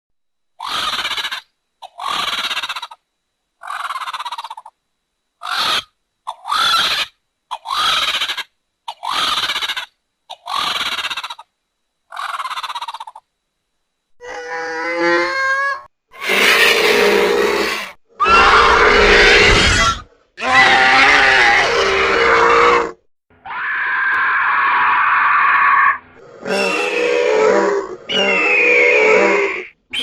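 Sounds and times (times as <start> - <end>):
wavering creature call: 3.6 - 4.7, 5.4 - 11.5, 14.2 - 30.0
harsh honking creature calls: 14.2 - 30.0.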